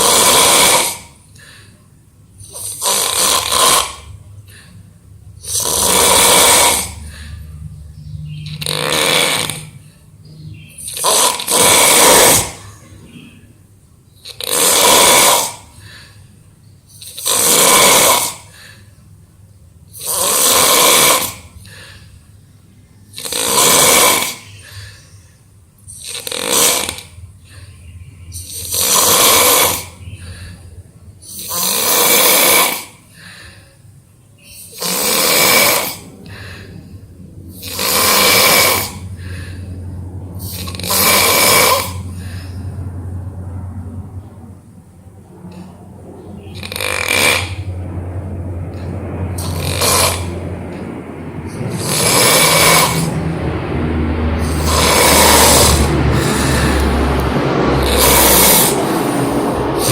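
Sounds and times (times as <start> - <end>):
person snoring loudly: 0.0 - 1.5, 2.4 - 4.6, 5.4 - 7.4, 8.4 - 9.9, 10.8 - 12.8, 14.2 - 16.1, 17.0 - 18.8, 19.9 - 22.0, 23.1 - 25.0, 25.9 - 27.2, 28.4 - 30.3, 31.3 - 33.3, 34.7 - 36.7, 37.5 - 39.7, 40.4 - 42.6, 46.6 - 47.7, 48.7 - 50.8, 51.5 - 59.9.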